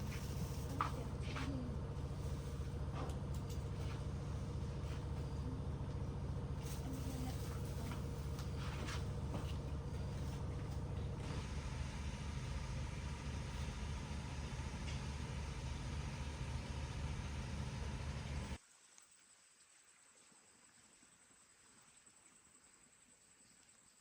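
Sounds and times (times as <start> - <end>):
motor engine humming: 0.0 - 18.6.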